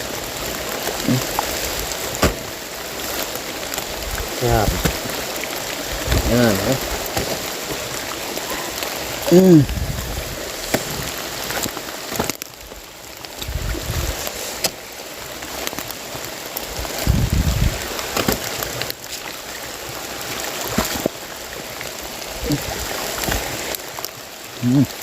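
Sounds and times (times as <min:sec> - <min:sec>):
low rumbles: 0:00.0 - 0:11.7, 0:13.3 - 0:14.6, 0:16.7 - 0:18.2
heavy rain pouring: 0:00.0 - 0:25.0
sharp drips and knocks: 0:00.0 - 0:25.0.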